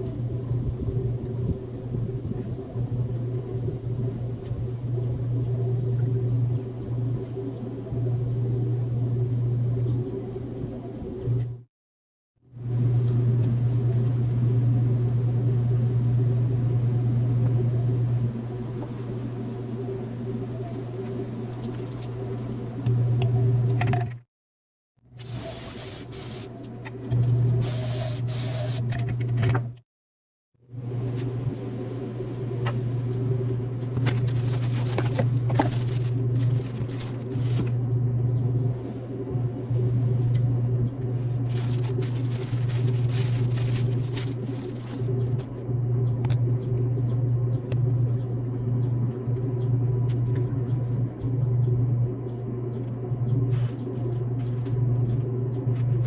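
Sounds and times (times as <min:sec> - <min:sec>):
vehicle engine humming: 0:30.8 - 0:39.3, 0:39.9 - 0:49.6.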